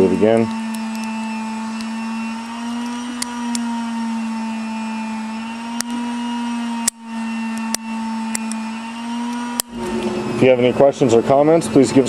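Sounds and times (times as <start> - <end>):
machine hum: 0.0 - 12.0
padlock clicking: 0.3 - 2.0, 2.8 - 3.7, 5.8 - 6.0, 6.8 - 8.6, 9.3 - 9.8.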